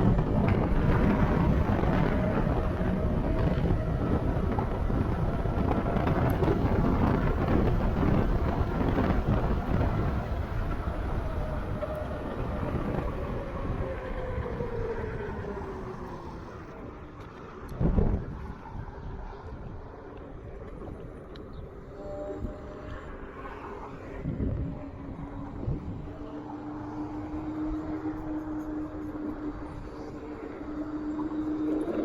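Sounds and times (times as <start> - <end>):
wind on microphone: 0.0 - 32.0
vehicle engine rumbling: 19.4 - 32.0.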